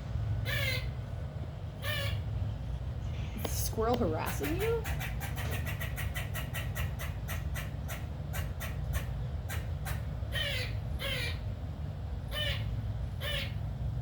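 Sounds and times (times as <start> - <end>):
squirrel alarm barks: 0.5 - 1.0, 1.8 - 2.3, 4.2 - 11.5, 12.3 - 13.6.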